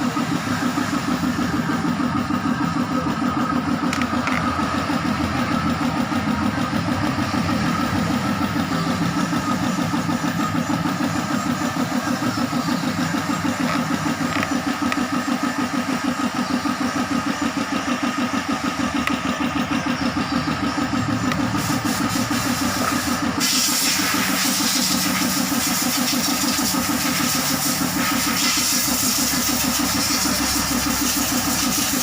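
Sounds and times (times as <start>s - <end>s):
diesel engine idling: 0.0s - 32.0s
hiss: 21.6s - 32.0s.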